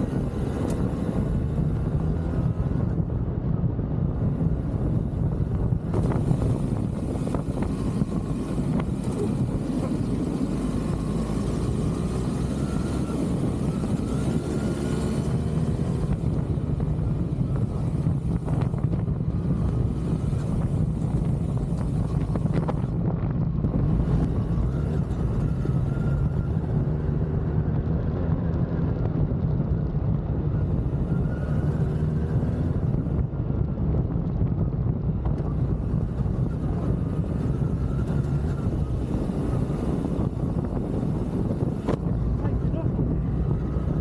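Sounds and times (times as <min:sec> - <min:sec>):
motorcycle engine running: 0:00.0 - 0:31.2
wind rushing over microphone: 0:00.0 - 0:44.0.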